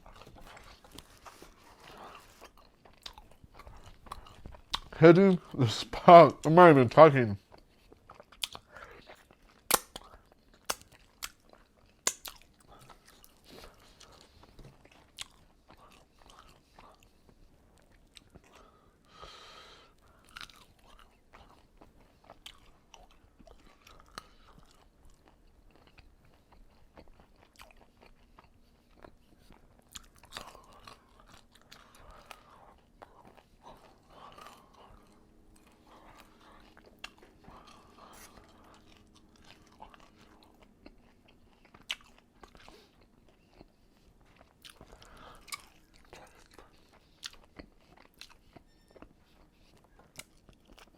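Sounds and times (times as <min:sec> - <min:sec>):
chewing and lip smacking: 0:00.0 - 0:06.7, 0:07.3 - 0:50.9
wet mouth clicks: 0:09.7 - 0:11.4, 0:12.1 - 0:12.4.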